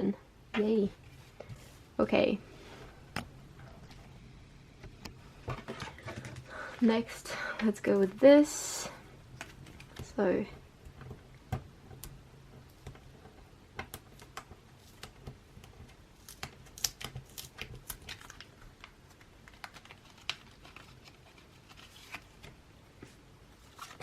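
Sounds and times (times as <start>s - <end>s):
plastic crinkling: 14.1s - 22.6s.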